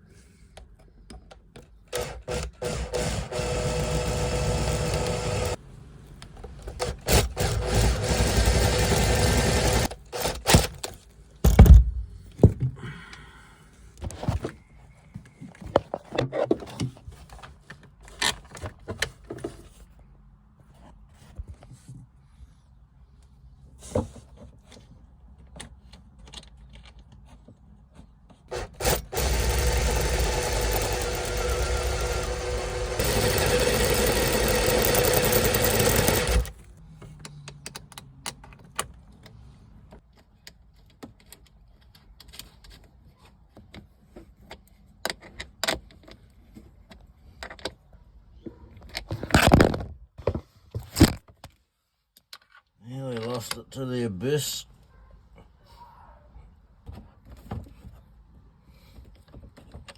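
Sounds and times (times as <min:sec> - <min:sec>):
power drill whining: 0:01.9 - 0:05.6, 0:07.0 - 0:10.6, 0:28.5 - 0:36.6.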